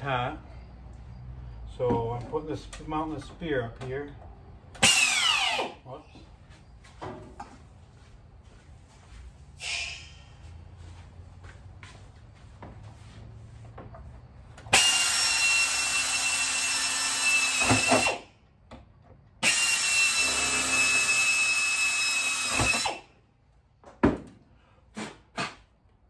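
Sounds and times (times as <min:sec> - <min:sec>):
power drill driving screws: 0:04.8 - 0:05.8, 0:14.7 - 0:18.3, 0:19.4 - 0:23.1.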